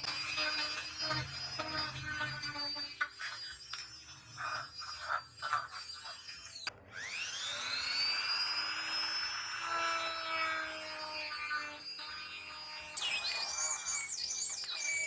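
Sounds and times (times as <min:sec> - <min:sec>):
power tool motor whine: 0:06.9 - 0:15.0.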